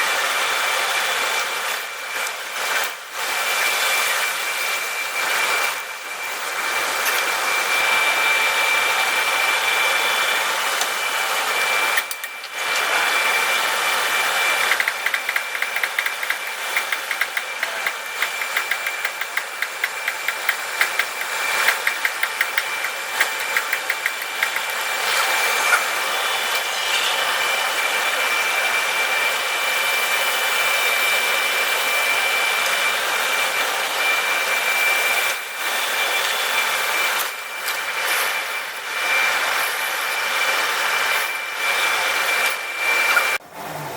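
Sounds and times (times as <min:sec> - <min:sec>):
electric grinder whining: 0:00.0 - 0:43.9
drill bit rasping on grinder: 0:11.1 - 0:29.2.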